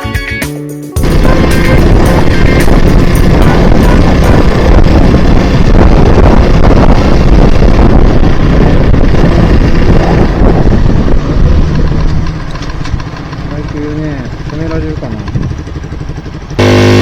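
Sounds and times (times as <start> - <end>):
wind rushing over microphone: 1.0 - 13.5
motorcycle engine running: 1.0 - 17.0.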